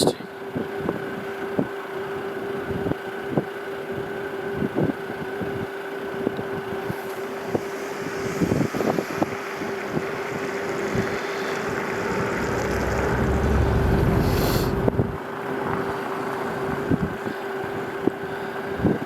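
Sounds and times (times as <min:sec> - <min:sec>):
heater humming: 0:05.9 - 0:15.3
wind gusts thumping: 0:07.1 - 0:15.3.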